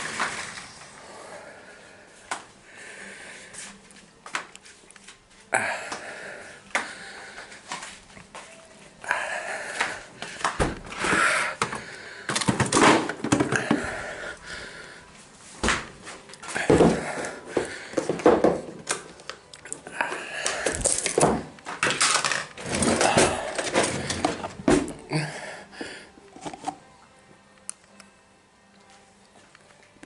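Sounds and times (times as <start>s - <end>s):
man breathing hard: 1.0s - 3.7s, 5.5s - 7.7s, 9.0s - 12.6s, 13.3s - 15.2s, 16.5s - 18.4s, 19.8s - 21.2s, 25.1s - 26.2s.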